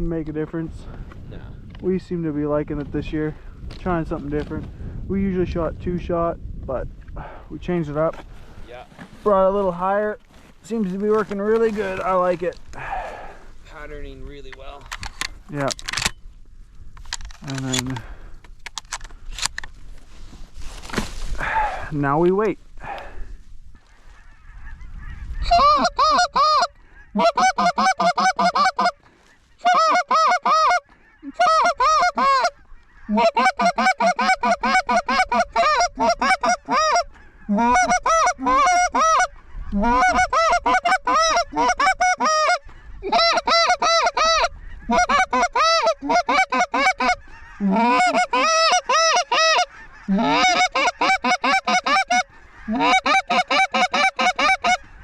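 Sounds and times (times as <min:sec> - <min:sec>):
goose honking: 0:24.1 - 0:55.0.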